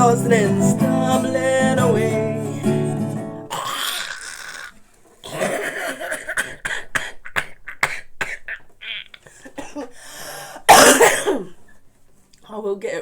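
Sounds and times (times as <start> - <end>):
person coughing: 5.2 - 10.0, 10.7 - 11.6.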